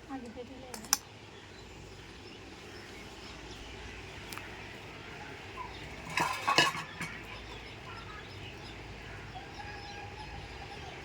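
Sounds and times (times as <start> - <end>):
metal cookware clattering: 5.8 - 7.6.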